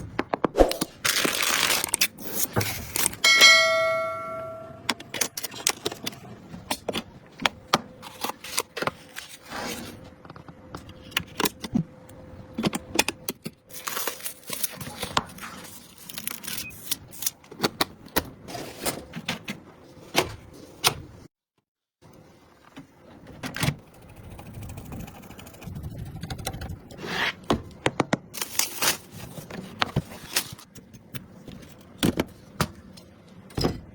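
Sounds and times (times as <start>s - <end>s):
short metallic ring: 3.2s - 4.9s.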